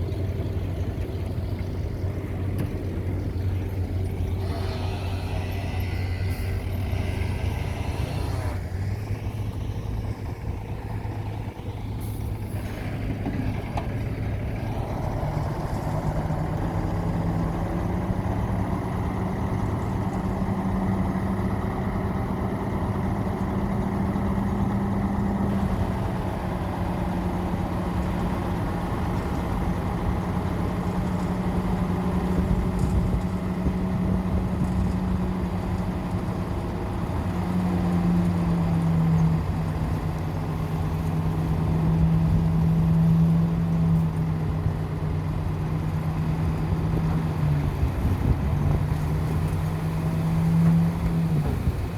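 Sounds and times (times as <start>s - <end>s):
diesel truck engine running: 0.0s - 51.9s.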